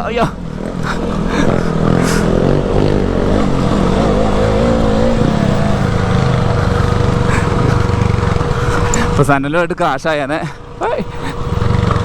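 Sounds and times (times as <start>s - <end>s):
motorcycle engine revving: 0.0s - 9.5s, 10.5s - 12.0s.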